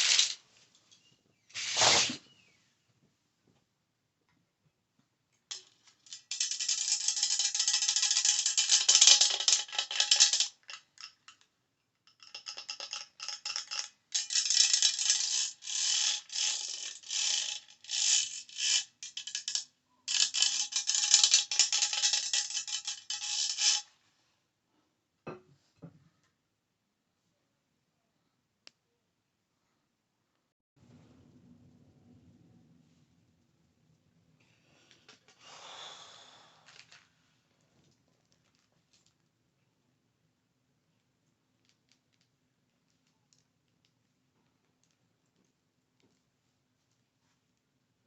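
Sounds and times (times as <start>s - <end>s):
rasping ratchet-like handling noise: 12.2s - 23.8s.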